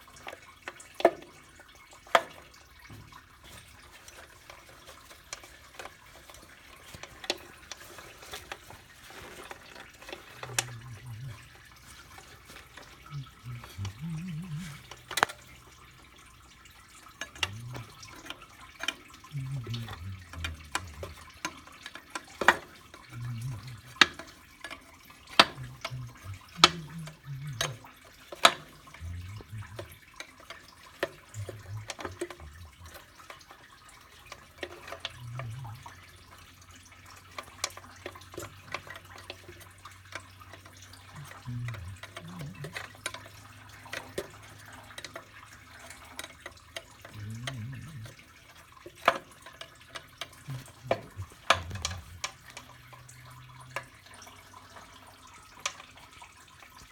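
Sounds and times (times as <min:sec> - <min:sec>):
faint low hum: 0:07.8 - 0:16.3, 0:28.7 - 0:30.2.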